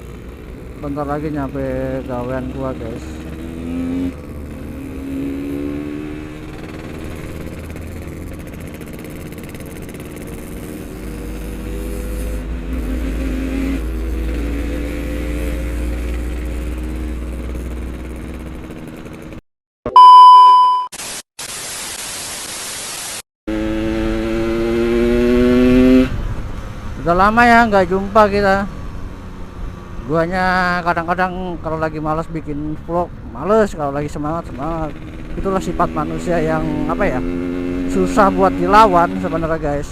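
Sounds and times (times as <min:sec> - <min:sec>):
motorcycle engine revving: 0:00.0 - 0:19.4, 0:23.5 - 0:31.5, 0:34.2 - 0:39.9
loud steady beep: 0:19.9 - 0:21.0
static hiss: 0:20.9 - 0:23.2.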